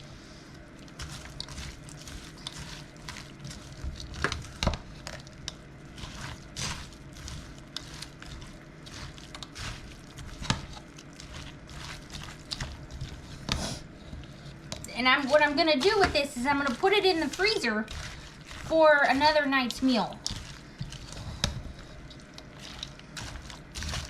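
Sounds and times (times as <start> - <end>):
spoon stirring wet mixture: 0.8 - 24.0.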